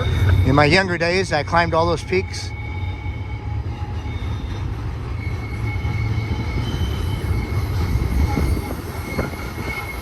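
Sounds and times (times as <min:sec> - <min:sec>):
train wheels rumbling on rail: 0:00.0 - 0:10.0
thin wheel squeal: 0:03.9 - 0:10.0.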